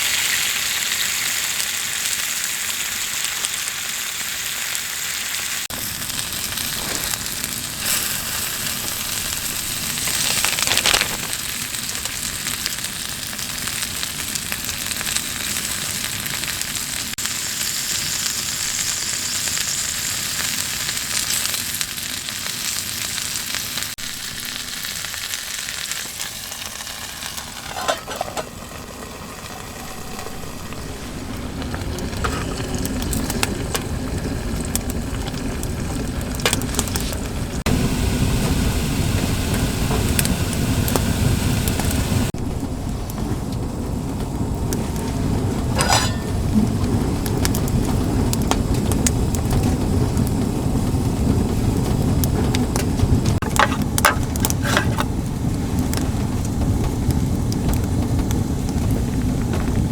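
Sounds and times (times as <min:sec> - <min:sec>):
food sizzling in a pan: 0:00.0 - 0:42.4, 0:44.8 - 0:46.8
stirring or scraping in pan: 0:27.2 - 0:28.6, 0:29.6 - 0:33.9, 0:45.7 - 0:46.6, 0:53.4 - 0:55.1.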